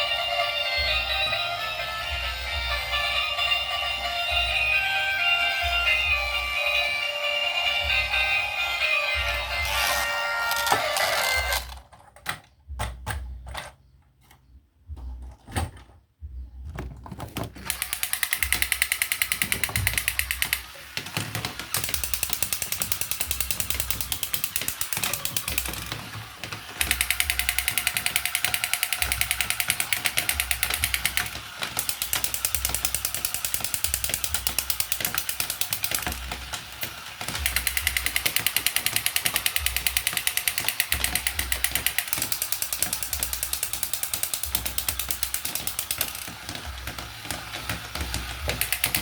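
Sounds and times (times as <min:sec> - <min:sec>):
toy mechanism rattling clicks: 0:09.2 - 0:12.4, 0:17.6 - 0:49.0
handling clicks: 0:26.8 - 0:49.0.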